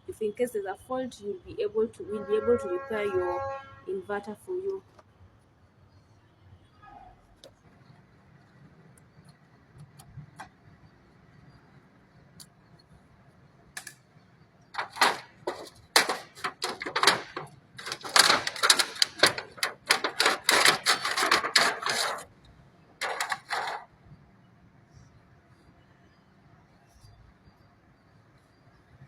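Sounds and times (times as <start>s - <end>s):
hand tools and metal parts clattering: 14.8s - 22.3s, 23.0s - 23.9s.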